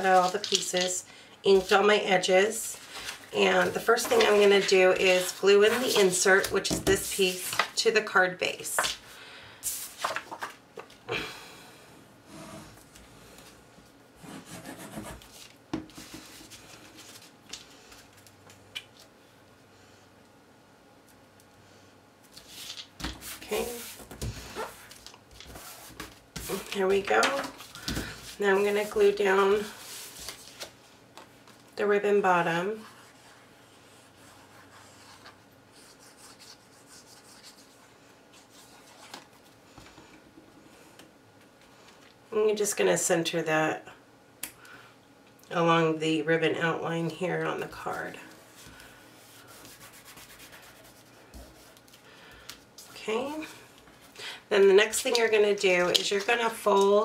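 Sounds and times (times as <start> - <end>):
cardstock rustling and rubbing: 0.0 - 0.9, 2.8 - 7.7, 9.7 - 10.6, 22.4 - 30.8
cardstock rustling and scratching: 0.0 - 0.9, 2.9 - 7.8.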